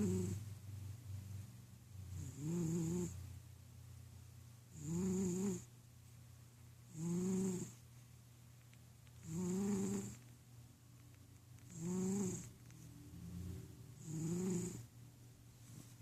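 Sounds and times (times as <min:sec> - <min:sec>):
cat snoring: 0:00.0 - 0:00.4, 0:02.1 - 0:03.2, 0:04.7 - 0:05.7, 0:06.9 - 0:07.8, 0:09.2 - 0:10.2, 0:11.7 - 0:12.5, 0:13.3 - 0:14.9.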